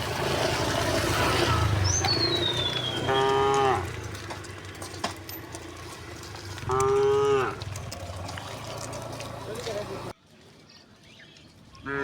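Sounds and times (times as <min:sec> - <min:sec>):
cow mooing: 0:03.0 - 0:04.0, 0:06.6 - 0:07.8.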